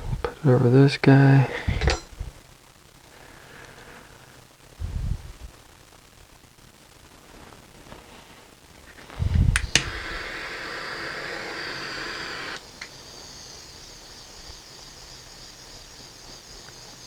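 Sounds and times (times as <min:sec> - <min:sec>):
heat gun blowing: 0:09.1 - 0:17.0.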